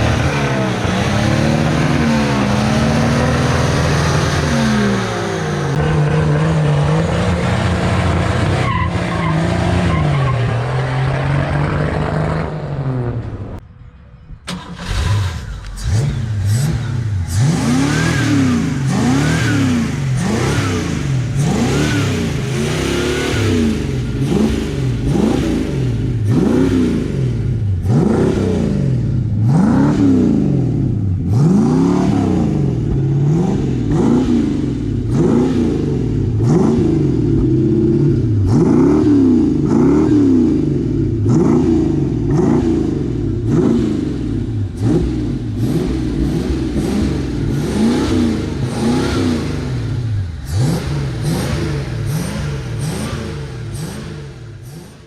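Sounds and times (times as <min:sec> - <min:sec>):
truck engine revving in blips: 0:00.0 - 0:13.6, 0:14.5 - 0:55.0.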